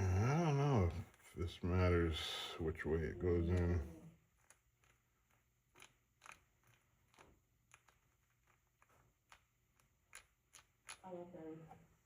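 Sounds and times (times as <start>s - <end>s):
small plastic parts clicking: 3.5s - 11.1s.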